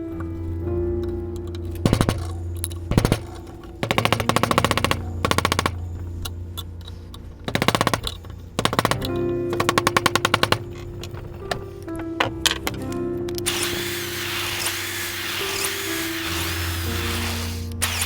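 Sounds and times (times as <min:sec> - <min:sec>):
background music: 0:00.0 - 0:18.0
rapid knocking: 0:01.8 - 0:05.8, 0:07.5 - 0:12.8.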